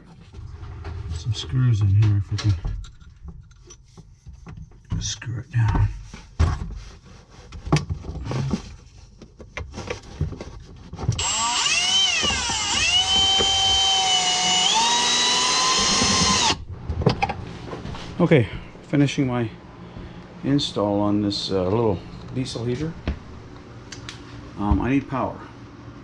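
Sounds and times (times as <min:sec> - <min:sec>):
electric drill driving screw: 0:11.2 - 0:16.6.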